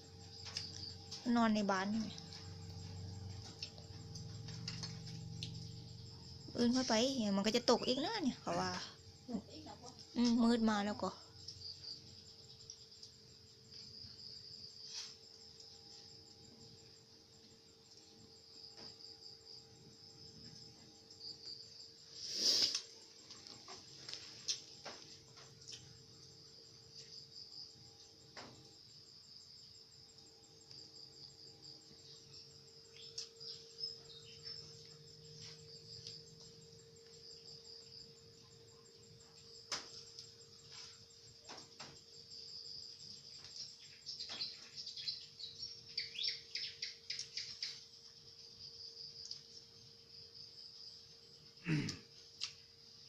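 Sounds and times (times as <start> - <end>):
night insects trilling: 0.0 - 53.0.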